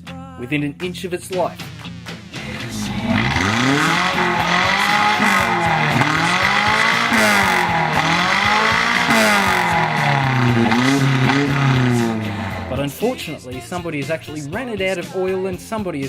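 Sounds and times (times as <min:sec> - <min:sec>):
car engine revving hard: 0:02.3 - 0:13.0.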